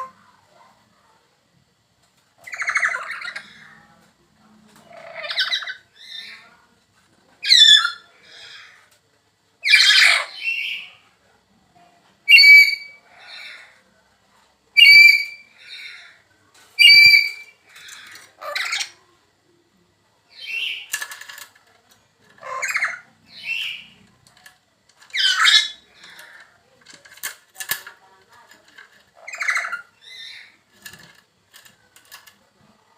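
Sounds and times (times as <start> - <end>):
bird squawking: 12.3 - 13.7, 22.4 - 23.9.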